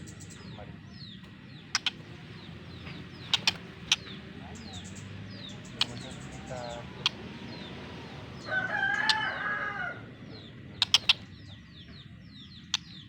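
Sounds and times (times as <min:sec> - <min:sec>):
small birds chirping: 0:00.0 - 0:13.0
sharp clicks: 0:02.9 - 0:04.2, 0:05.6 - 0:06.2, 0:10.8 - 0:11.2
rooster crowing: 0:08.4 - 0:10.2.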